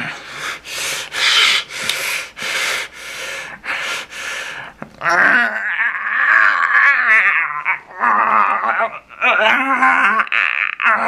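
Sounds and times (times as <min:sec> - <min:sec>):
man huffing forceful breaths: 0:00.0 - 0:04.8.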